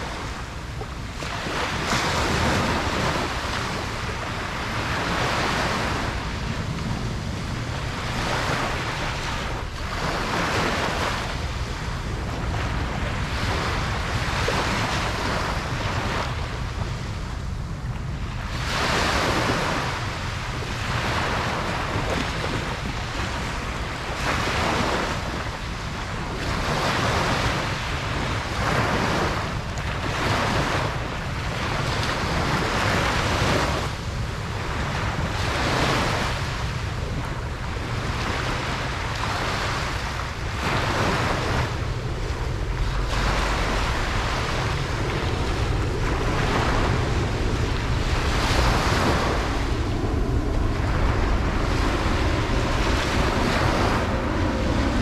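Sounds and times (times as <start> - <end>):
ocean waves breaking on beach: 0.0 - 55.0
low rumble: 36.6 - 55.0.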